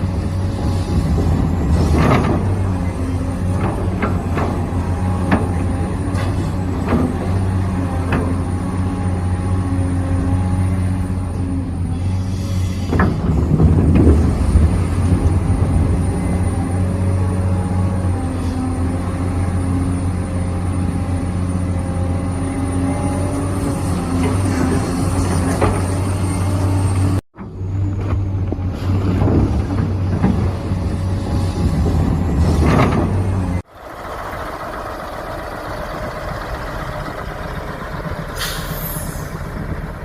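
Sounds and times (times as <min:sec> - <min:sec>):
model excavator engine hum: 0:00.0 - 0:40.0
clatter and scraping: 0:00.6 - 0:08.6, 0:27.8 - 0:33.6.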